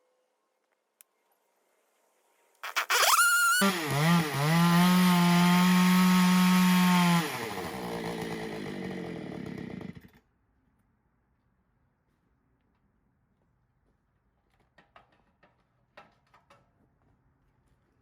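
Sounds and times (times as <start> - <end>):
chainsaw revving: 2.6 - 10.2.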